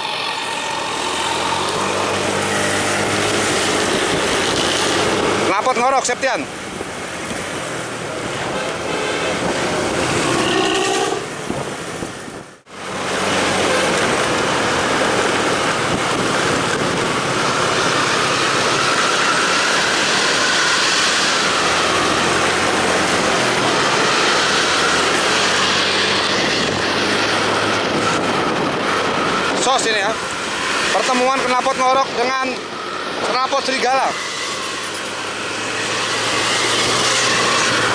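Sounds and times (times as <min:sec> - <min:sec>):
bus exhaust low drone: 0:00.0 - 0:05.5, 0:06.5 - 0:33.3, 0:34.1 - 0:37.9
road and wind noise: 0:00.0 - 0:37.9.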